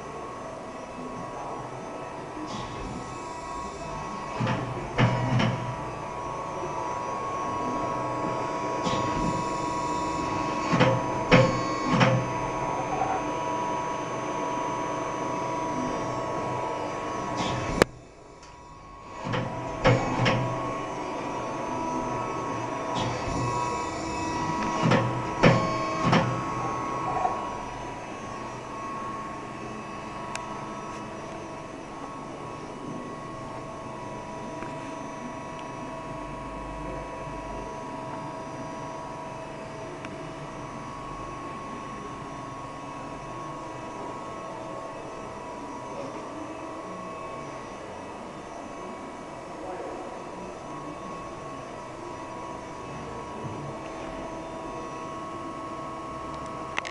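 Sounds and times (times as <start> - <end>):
hydraulic press brake hum: 1.6 - 38.8
machine clunks: 4.2 - 5.9, 8.2 - 13.2, 17.3 - 21.4, 22.0 - 27.8.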